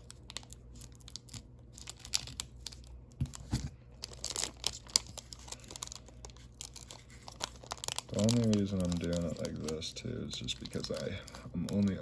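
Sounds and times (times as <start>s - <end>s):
plastic packaging crinkling and tearing: 0.0s - 12.0s.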